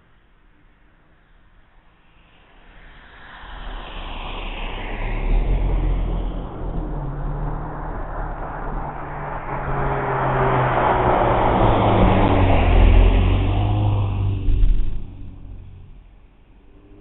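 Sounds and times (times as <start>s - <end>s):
car engines humming: 2.4s - 17.0s
tyres rushing on road: 3.2s - 17.0s.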